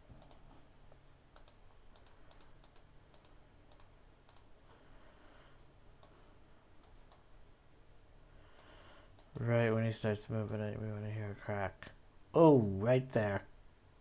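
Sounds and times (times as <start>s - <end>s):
low steady hum: 0.0s - 14.0s
keyboard and mouse clicking: 0.1s - 0.5s, 1.4s - 4.5s, 6.8s - 7.3s, 8.6s - 9.5s.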